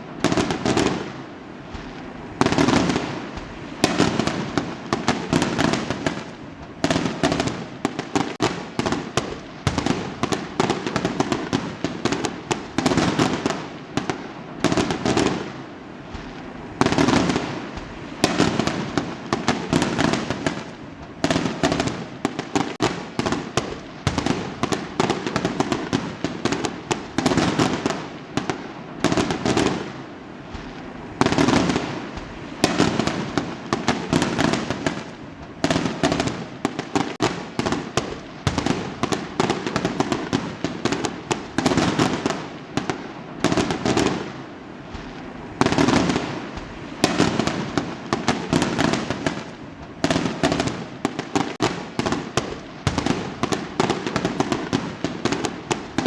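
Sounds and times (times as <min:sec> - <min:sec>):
fireworks crackling and popping: 0:00.0 - 0:56.0.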